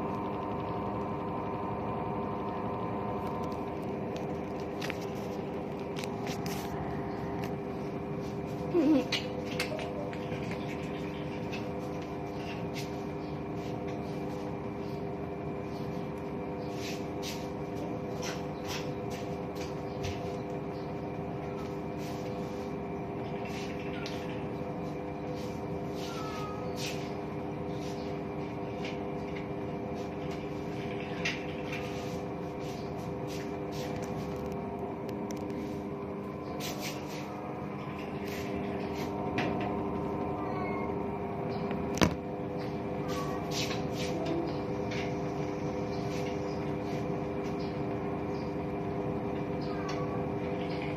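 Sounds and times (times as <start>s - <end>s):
washing machine humming: 0.0s - 50.9s.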